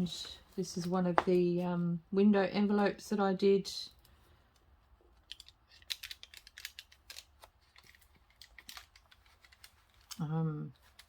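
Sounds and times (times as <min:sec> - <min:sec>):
paper and card crackling: 0:05.2 - 0:11.0.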